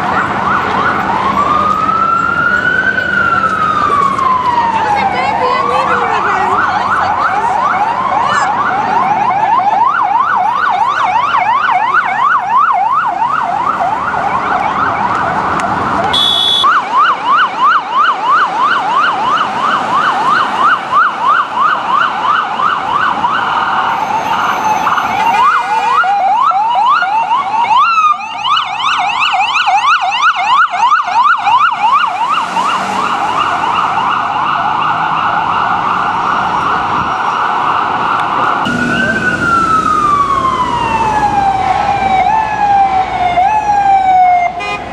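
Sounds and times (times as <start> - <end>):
ambulance siren yelping: 0.0 - 44.8.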